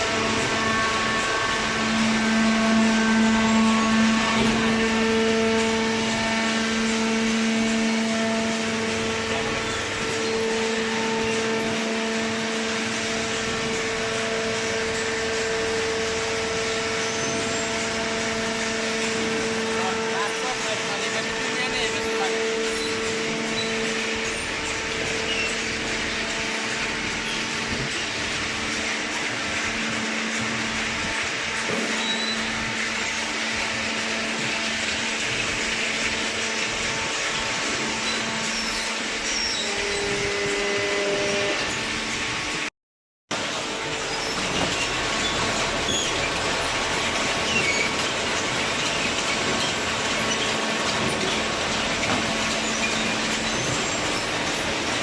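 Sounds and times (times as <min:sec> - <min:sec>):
machine humming: 0:00.0 - 0:42.6, 0:43.3 - 0:55.0.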